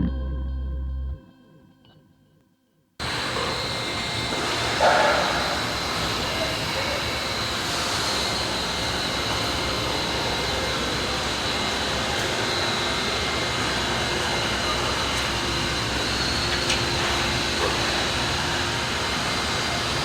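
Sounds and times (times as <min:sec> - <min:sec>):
high whine: 0:00.0 - 0:02.4
machine humming and hissing: 0:03.0 - 0:20.0.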